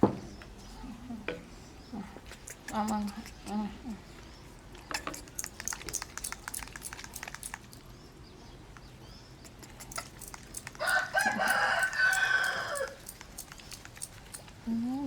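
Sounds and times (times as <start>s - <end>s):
small quick clicks: 5.1s - 7.8s
rooster crowing: 10.8s - 13.0s.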